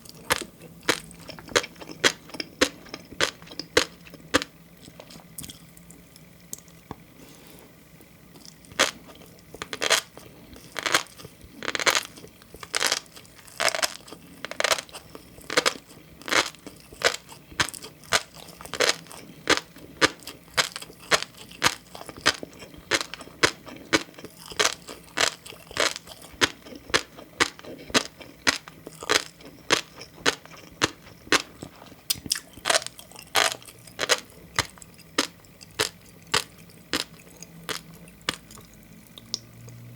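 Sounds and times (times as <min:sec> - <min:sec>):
crunchy chewing of fish roe: 0:00.0 - 0:39.8.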